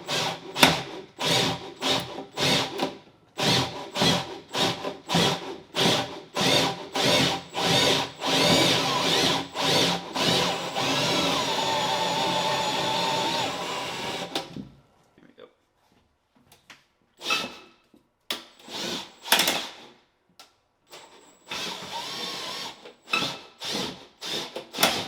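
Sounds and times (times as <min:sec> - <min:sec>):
power drill boring into wood: 0:00.0 - 0:14.6, 0:18.6 - 0:19.8, 0:21.0 - 0:25.0.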